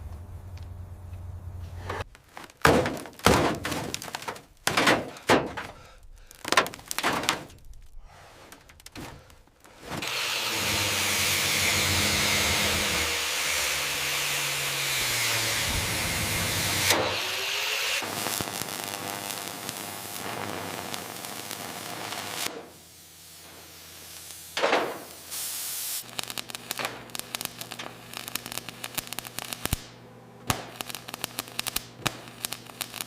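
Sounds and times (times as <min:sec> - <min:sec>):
irregular knocks and thunks: 0:01.8 - 0:05.9
loud spraying hiss: 0:22.2 - 0:26.1.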